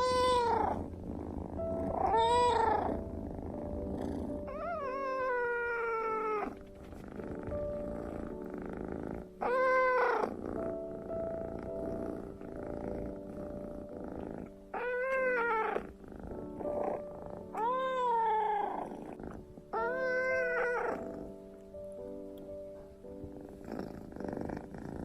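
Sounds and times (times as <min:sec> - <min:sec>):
kitten meowing: 0:00.0 - 0:00.8, 0:01.9 - 0:03.0, 0:04.5 - 0:06.6, 0:09.4 - 0:10.2, 0:14.8 - 0:15.9, 0:17.5 - 0:18.8, 0:19.8 - 0:21.1
kitten purring: 0:00.0 - 0:25.0.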